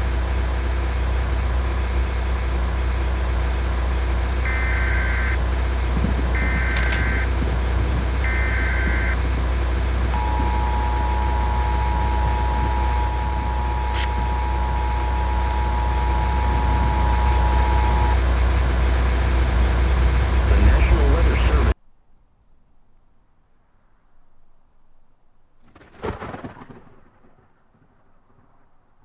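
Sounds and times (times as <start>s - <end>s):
vehicle cabin rumble: 0.0s - 21.8s
warbling data bursts: 6.4s - 7.4s, 8.2s - 21.7s
two-note attention tone: 8.2s - 21.0s.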